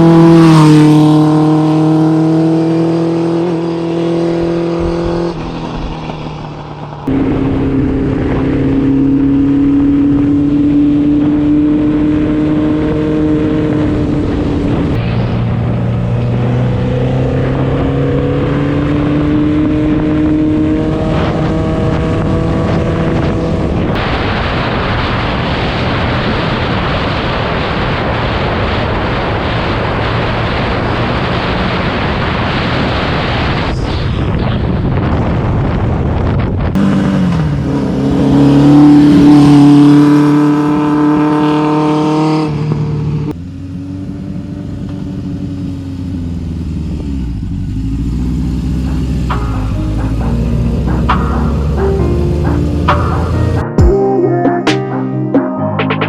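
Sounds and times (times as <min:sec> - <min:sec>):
motorcycle engine running: 0:00.0 - 0:25.2, 0:42.6 - 0:54.0
wind rushing over microphone: 0:00.0 - 0:43.4.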